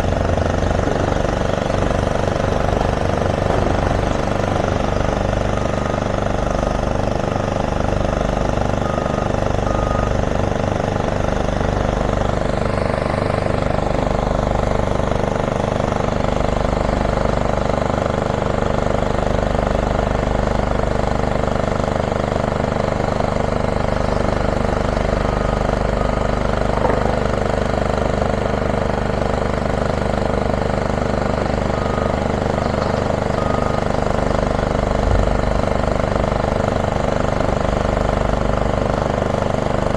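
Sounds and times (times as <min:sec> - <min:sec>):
diesel machinery engine drone: 0:00.0 - 0:39.9
faint short beeps: 0:31.6 - 0:34.1.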